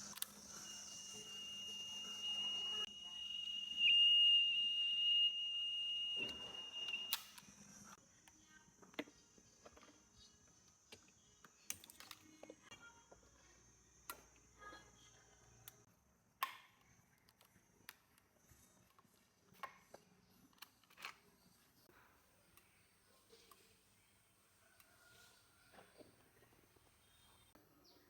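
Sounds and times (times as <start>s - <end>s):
high test tone: 0.5s - 7.2s.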